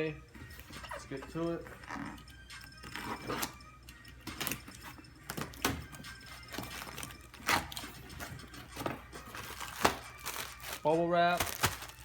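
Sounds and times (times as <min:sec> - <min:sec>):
packaging rustling and crackling: 0:04.3 - 0:12.0.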